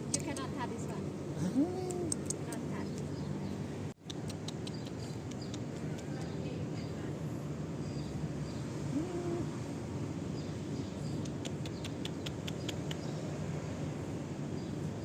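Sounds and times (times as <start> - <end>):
background hum: 0.0 - 15.0
sharp clicks: 1.8 - 3.1, 4.0 - 6.3, 11.2 - 13.1.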